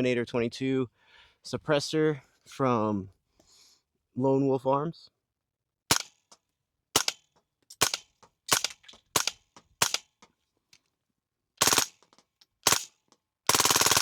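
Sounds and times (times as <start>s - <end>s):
suppressed rifle shots: 5.9s - 6.1s, 7.0s - 7.2s, 7.8s - 10.1s, 11.6s - 12.9s, 13.5s - 14.0s.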